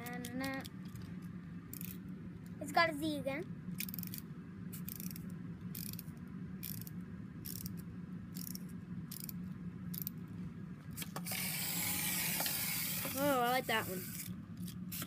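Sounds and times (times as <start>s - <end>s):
clockwork gears whirring: 1.7s - 2.1s, 3.7s - 10.2s, 11.0s - 15.0s.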